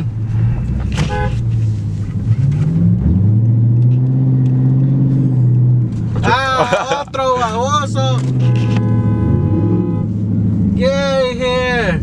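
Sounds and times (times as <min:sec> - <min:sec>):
pickup truck engine accelerating: 0:00.0 - 0:11.8.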